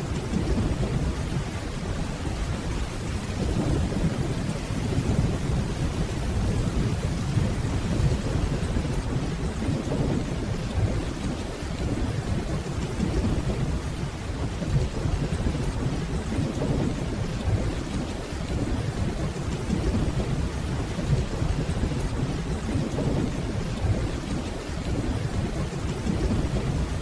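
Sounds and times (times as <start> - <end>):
distant rolling thunder: 0.0 - 27.0
steady rainfall: 0.0 - 27.0.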